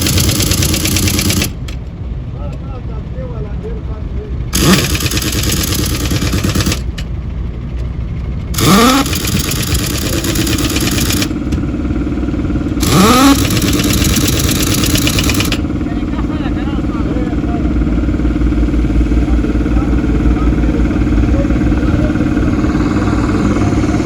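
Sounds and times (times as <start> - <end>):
pneumatic impact wrench: 0.0 - 1.8, 4.5 - 7.1, 8.5 - 11.6, 12.7 - 15.6
engine hum: 0.0 - 24.0.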